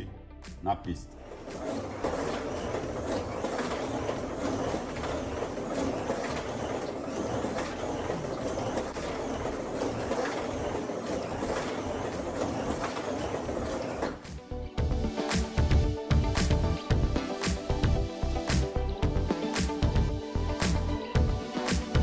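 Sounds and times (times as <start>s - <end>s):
slot car motor whirring: 1.2s - 14.4s.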